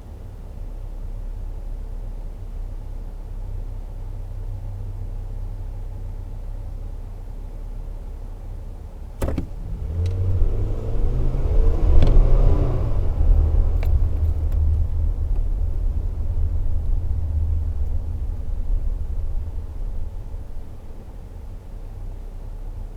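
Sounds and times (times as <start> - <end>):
low road rumble: 0.0 - 22.9
pickup engine accelerating: 9.0 - 22.9.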